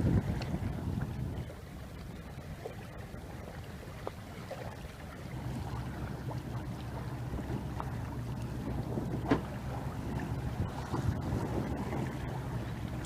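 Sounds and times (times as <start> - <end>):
boat rumble: 0.0 - 13.0
wind on microphone: 0.0 - 13.0
light knocks: 9.2 - 9.5.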